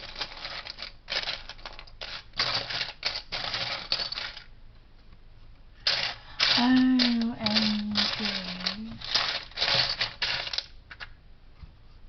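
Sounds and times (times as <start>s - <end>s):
plastic toy bricks clicking: 5.9s - 11.2s.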